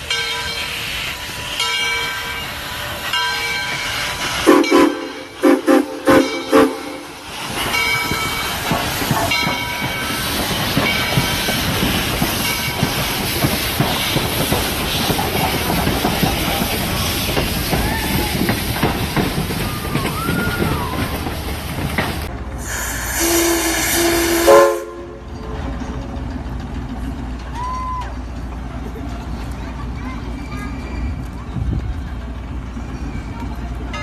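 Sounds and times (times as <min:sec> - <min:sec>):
train rumble and rail clatter: 0:00.0 - 0:34.0
steam train whistle: 0:04.4 - 0:07.2, 0:22.6 - 0:25.2
faint wheel squeal: 0:30.1 - 0:31.6.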